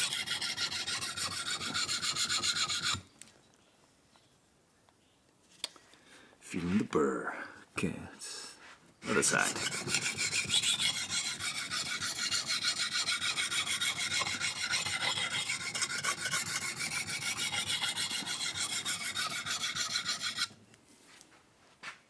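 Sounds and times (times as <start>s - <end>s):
blade rasping on sharpening stone: 0.0s - 3.0s, 9.3s - 20.5s.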